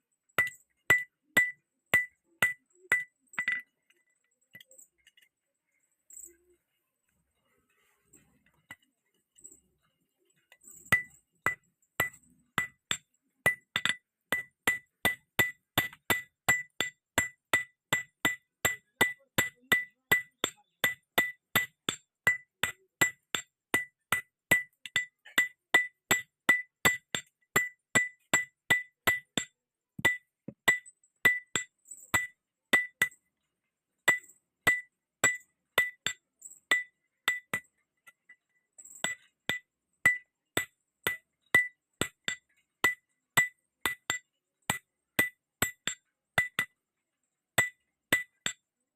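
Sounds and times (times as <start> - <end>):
hammer striking iron on anvil: 0.4 - 3.7, 10.9 - 33.2, 34.1 - 38.2, 39.0 - 46.8, 47.6 - 48.6.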